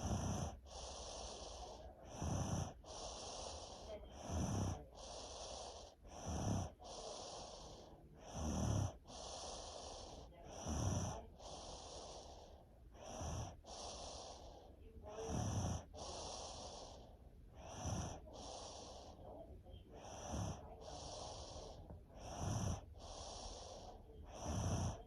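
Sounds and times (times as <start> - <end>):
loud deep snoring: 0.0 - 25.0
soft hissing breath: 0.0 - 25.0.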